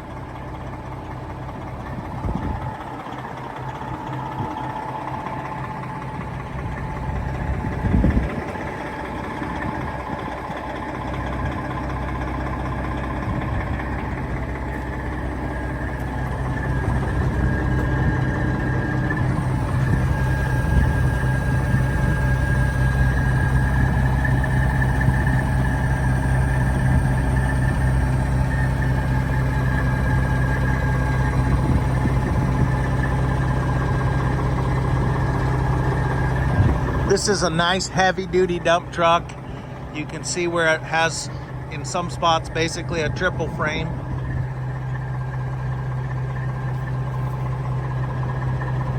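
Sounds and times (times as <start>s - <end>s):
diesel truck idling: 0.0s - 48.9s.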